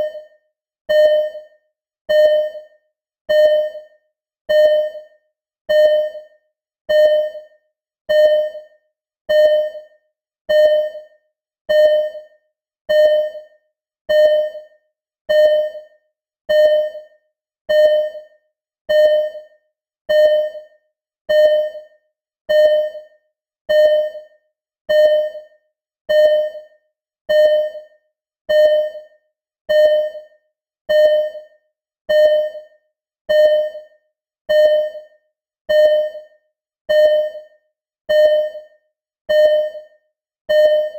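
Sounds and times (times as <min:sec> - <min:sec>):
heart monitor beeping: 0:00.0 - 0:00.3, 0:00.9 - 0:01.5, 0:02.1 - 0:02.7, 0:03.3 - 0:03.9, 0:04.5 - 0:05.1, 0:05.7 - 0:06.3, 0:06.9 - 0:07.5, 0:08.1 - 0:08.7, 0:09.3 - 0:09.9, 0:10.5 - 0:11.1, 0:11.7 - 0:12.3, 0:12.9 - 0:13.5, 0:14.1 - 0:14.7, 0:15.3 - 0:15.9, 0:16.5 - 0:17.1, 0:17.7 - 0:18.3, 0:18.9 - 0:19.5, 0:20.1 - 0:20.7, 0:21.3 - 0:21.9, 0:22.5 - 0:23.1, 0:23.7 - 0:24.3, 0:24.9 - 0:25.5, 0:26.1 - 0:26.7, 0:27.3 - 0:27.9, 0:28.5 - 0:29.1, 0:29.7 - 0:30.3, 0:30.9 - 0:31.5, 0:32.1 - 0:32.7, 0:33.3 - 0:33.9, 0:34.5 - 0:35.1, 0:35.7 - 0:36.3, 0:36.9 - 0:40.9.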